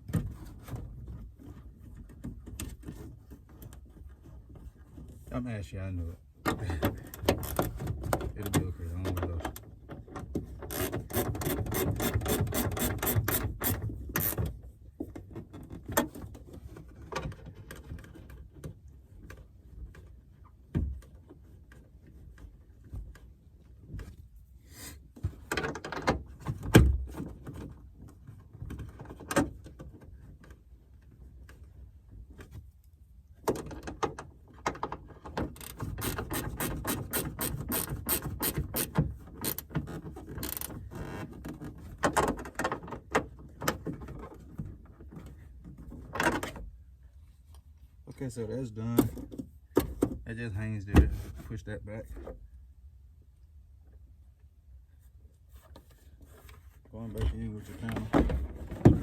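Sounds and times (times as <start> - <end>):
ratchet wrench clicking: 10.8 - 14.4
knocks and clunks: 48.9 - 51.5, 57.0 - 59.0.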